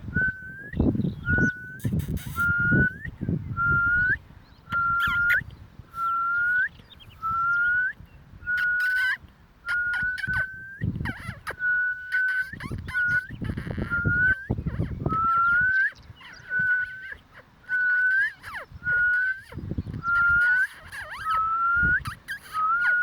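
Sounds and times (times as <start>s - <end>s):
squeaky toy squeaking: 8.8s - 9.2s, 9.9s - 14.0s, 17.9s - 23.0s.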